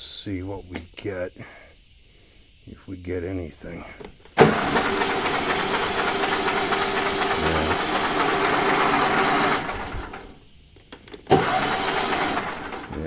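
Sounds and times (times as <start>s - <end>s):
engine cranking by electric starter: 4.1s - 13.0s.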